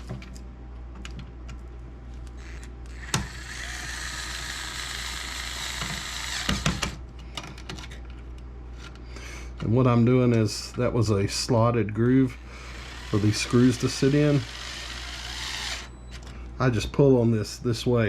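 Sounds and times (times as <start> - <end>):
electric screwdriver driving screw: 2.4 - 7.0, 12.7 - 15.9.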